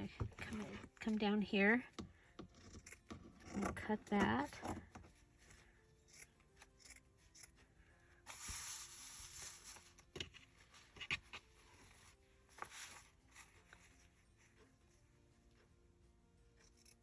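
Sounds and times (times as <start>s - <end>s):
paper rubbing and sliding: 8.3s - 14.0s.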